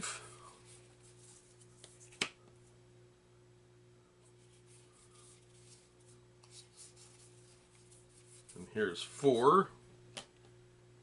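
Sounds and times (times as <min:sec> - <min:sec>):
low electrical hum: 0:00.0 - 0:11.0
playing cards rustling: 0:00.6 - 0:02.4, 0:04.3 - 0:09.6.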